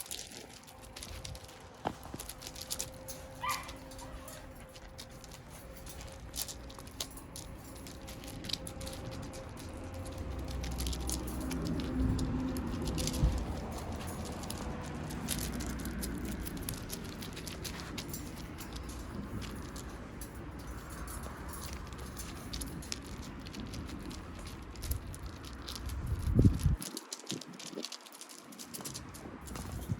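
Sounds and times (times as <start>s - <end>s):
puppy claws clicking and tapping: 0.0s - 29.9s
puppy whimper: 3.4s - 4.6s.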